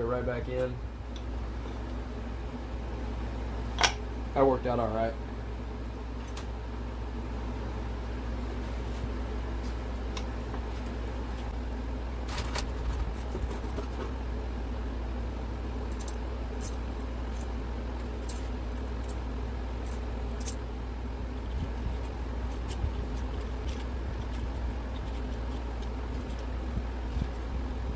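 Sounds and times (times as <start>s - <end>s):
steady low hum: 0.0s - 27.9s.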